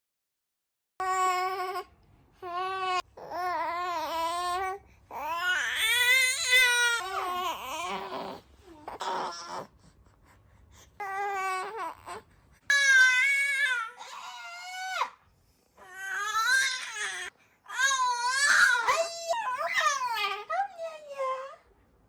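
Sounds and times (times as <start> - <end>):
baby shouting and crying: 11.0 - 15.2, 15.8 - 20.6.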